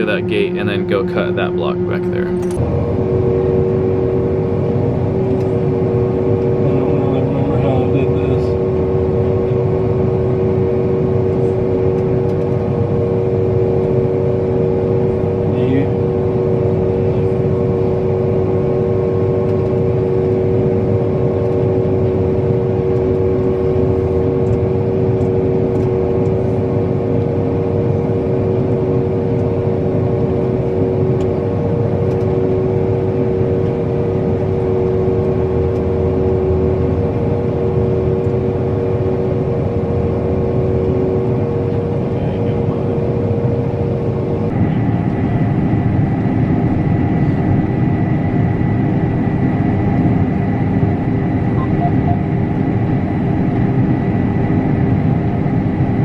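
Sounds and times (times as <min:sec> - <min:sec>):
combine harvester engine drone: 0:00.0 - 0:56.0
high steady whine: 0:00.0 - 0:56.0
humming tones: 0:50.6 - 0:53.0.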